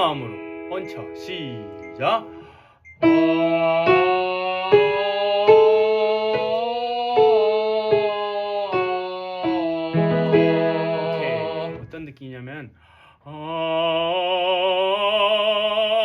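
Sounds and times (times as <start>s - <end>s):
instrumental chord accompaniment: 0.0s - 4.8s, 7.2s - 12.0s
person singing vocal exercise: 1.8s - 11.9s, 13.2s - 16.0s.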